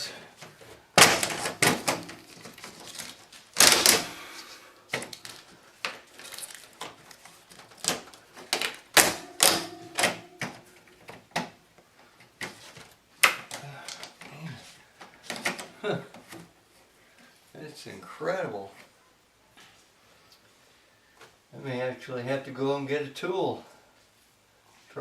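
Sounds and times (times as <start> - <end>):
air conditioner knocking and rattling: 1.0 - 2.7, 9.0 - 10.6.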